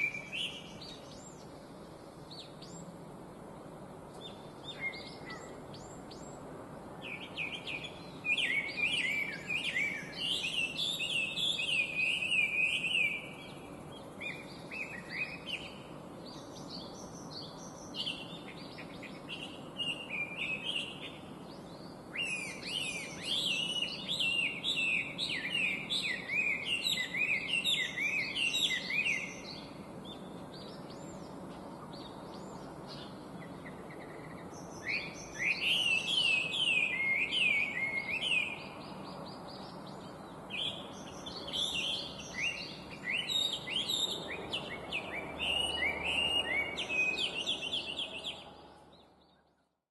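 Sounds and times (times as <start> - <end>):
steady low background noise: 0.0 - 49.9
songbird whistled phrases: 4.3 - 5.6, 7.0 - 13.4, 22.1 - 29.6, 34.8 - 38.8, 40.6 - 49.5.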